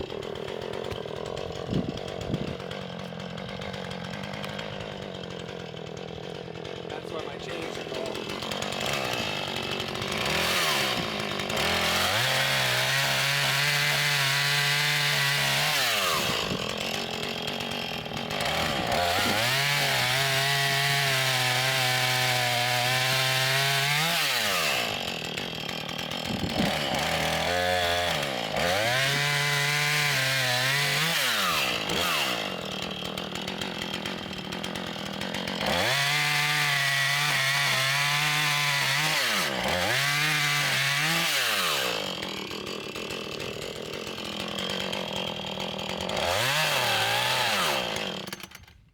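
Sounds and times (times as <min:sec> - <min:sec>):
chainsaw cutting wood: 0:00.0 - 0:48.9.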